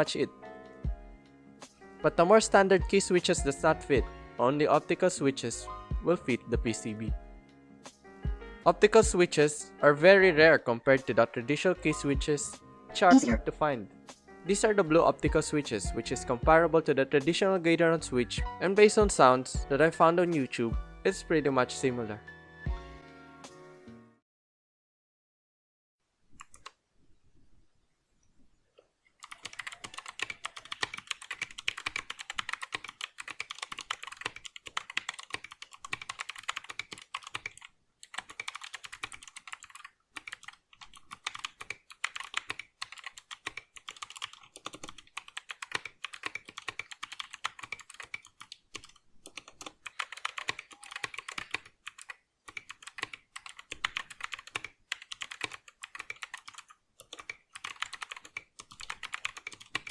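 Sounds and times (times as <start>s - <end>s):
fast typing on mechanical keyboard: 29.2s - 59.9s.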